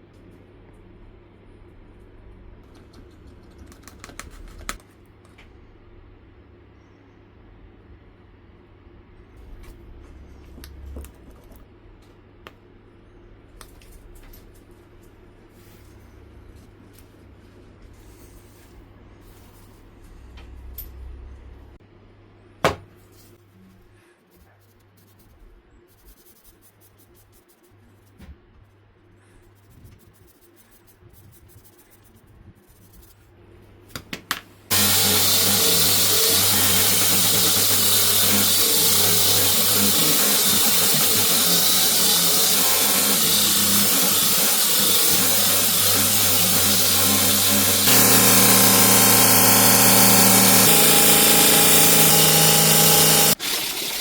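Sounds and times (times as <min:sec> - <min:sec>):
power tool motor hum and hiss: 0:34.7 - 0:53.9.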